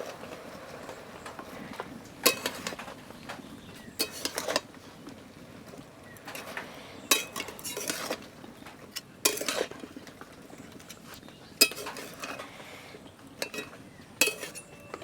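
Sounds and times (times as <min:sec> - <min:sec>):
metal utensil scraping pot: 0:02.2 - 0:02.8, 0:04.0 - 0:04.7, 0:06.3 - 0:08.3, 0:08.9 - 0:09.9, 0:11.6 - 0:12.7, 0:13.4 - 0:15.0.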